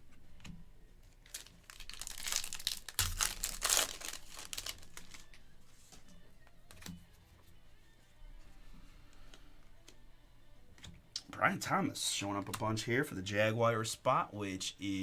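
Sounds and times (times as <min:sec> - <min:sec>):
foil wrapper crinkling: 0:01.0 - 0:05.4.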